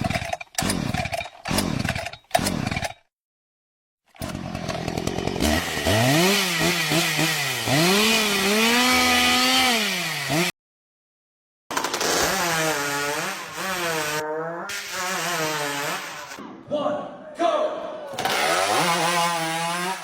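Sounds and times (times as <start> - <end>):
chainsaw revving: 0.0 - 3.0, 4.1 - 10.6, 11.7 - 16.4, 18.2 - 20.0.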